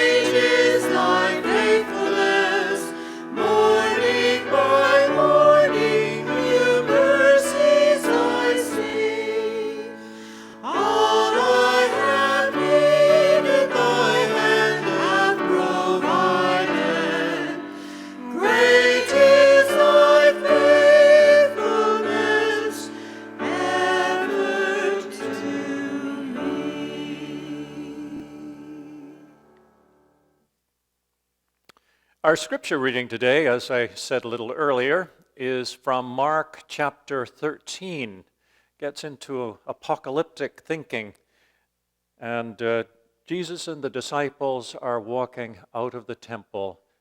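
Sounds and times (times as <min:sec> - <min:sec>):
choir singing a hymn: 0:00.0 - 0:29.5.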